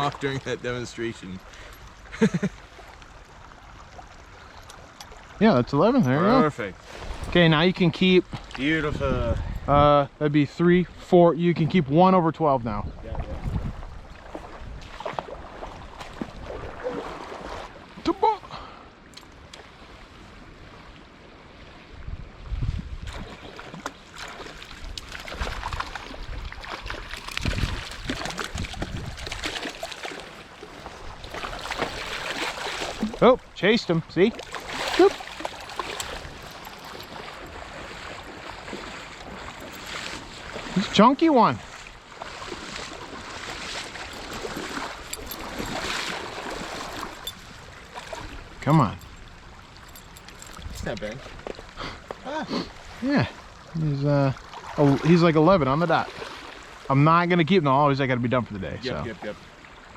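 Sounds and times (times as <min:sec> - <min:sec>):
low rumbling water surges: 0:00.0 - 0:11.0, 0:11.8 - 0:50.0, 0:50.9 - 0:59.9
stream water running and splashing: 0:00.0 - 0:59.9
small splashes and clicks: 0:01.4 - 0:05.4, 0:23.1 - 0:33.2, 0:34.2 - 0:40.9, 0:41.7 - 0:48.4, 0:49.8 - 0:52.2.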